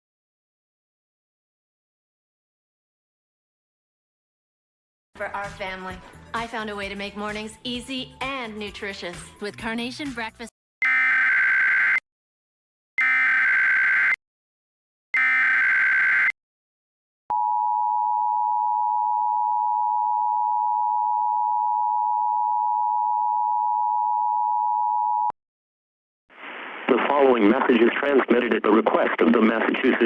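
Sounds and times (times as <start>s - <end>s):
screechy data bursts: 15.2s - 16.3s.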